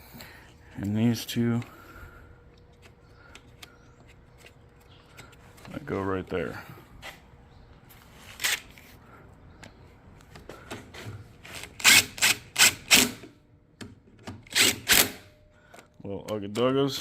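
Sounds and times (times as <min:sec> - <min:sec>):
ratchet wrench clicking: 0:11.8 - 0:13.2.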